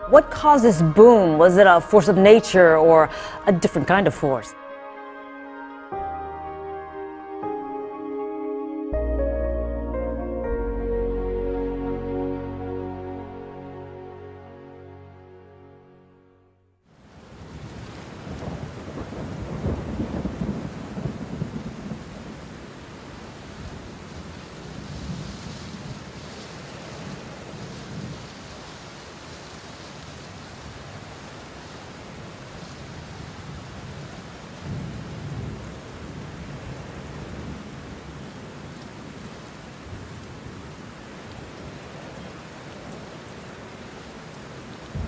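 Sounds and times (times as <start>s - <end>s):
steady rain: 16.9s - 45.0s
thunder rumbling: 17.2s - 28.4s, 34.6s - 38.5s, 44.8s - 45.0s.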